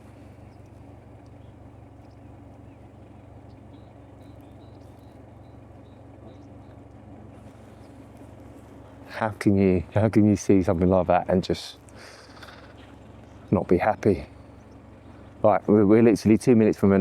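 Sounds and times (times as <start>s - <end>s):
faint high bird chirps: 0.0s - 8.2s, 14.2s - 15.4s
car engine idling: 0.0s - 17.0s.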